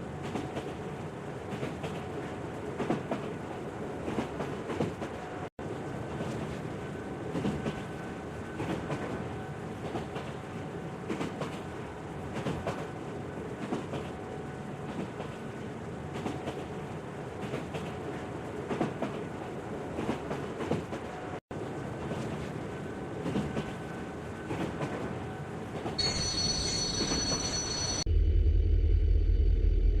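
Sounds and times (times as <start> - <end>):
train rolling clatter: 0.0 - 28.1
high steady tones: 26.0 - 29.8
loud low hum: 28.1 - 30.0.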